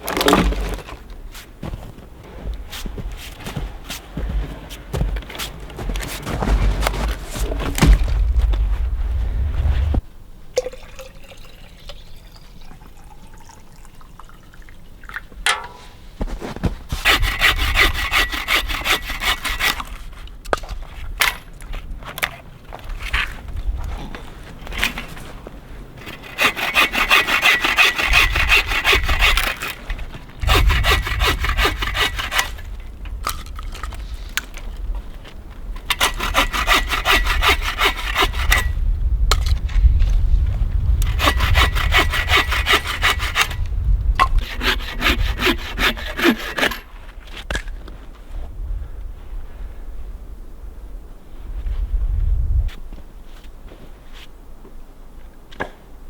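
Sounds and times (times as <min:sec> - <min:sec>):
hand saw cutting wood: 0:00.0 - 0:08.5, 0:16.4 - 0:20.3, 0:26.0 - 0:32.8, 0:35.9 - 0:38.8, 0:41.0 - 0:43.6, 0:44.2 - 0:47.0.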